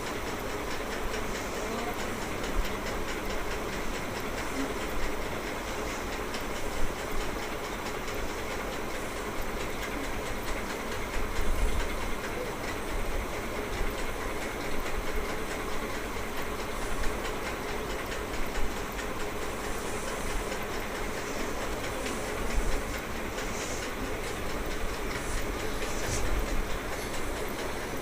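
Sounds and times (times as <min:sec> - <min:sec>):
rumbling hissing noise: 0:10.8 - 0:28.0.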